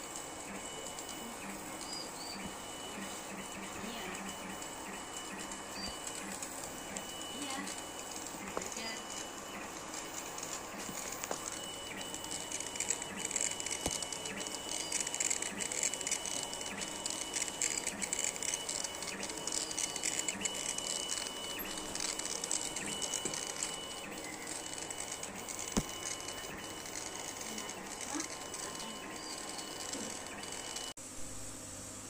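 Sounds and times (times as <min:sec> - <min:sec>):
laser cutter head whining: 0:00.0 - 0:31.0.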